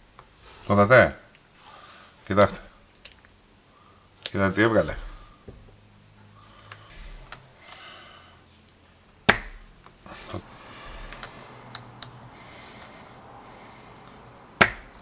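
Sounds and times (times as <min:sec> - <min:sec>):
desoldering pump snapping: 0:06.6 - 0:07.9, 0:08.6 - 0:13.0, 0:14.0 - 0:15.0.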